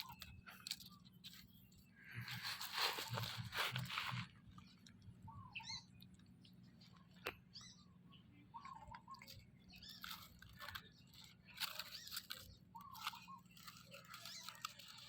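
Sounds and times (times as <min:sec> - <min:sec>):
faint squeaks: 0:06.8 - 0:15.0.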